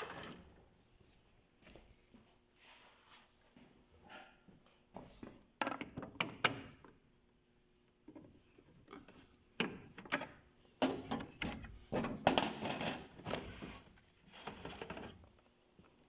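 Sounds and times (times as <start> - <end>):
plastic parts clicking and rattling: 9.6 - 13.5.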